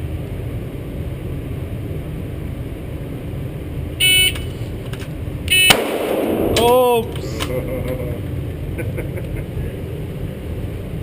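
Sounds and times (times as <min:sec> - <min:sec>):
low background rumble: 0:00.0 - 0:11.0
shot timer beep: 0:05.5 - 0:05.9.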